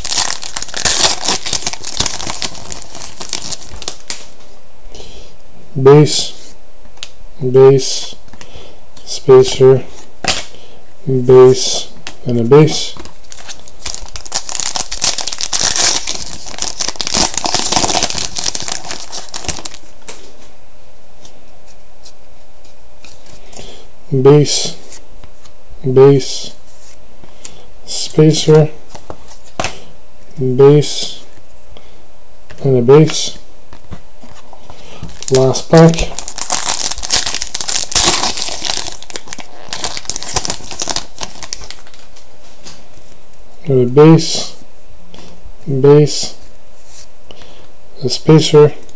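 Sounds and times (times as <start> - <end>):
wrapper being torn open: 0.0 - 4.3, 13.2 - 19.8, 35.1 - 42.1
wrapper crinkling: 0.0 - 4.4, 13.0 - 19.9, 35.0 - 42.2.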